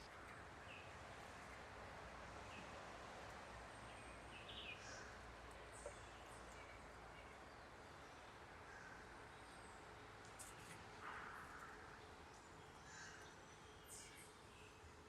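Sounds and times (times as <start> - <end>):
outdoor ambient hiss: 0.0 - 15.0
faint bird chirps: 12.7 - 14.8.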